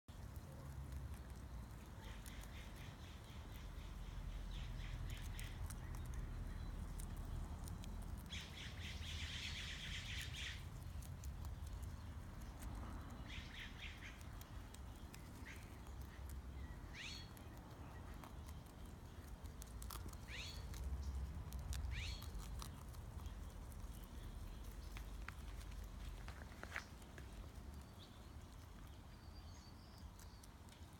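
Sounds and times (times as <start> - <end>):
rabbits crunching vegetables: 0.1 - 30.9.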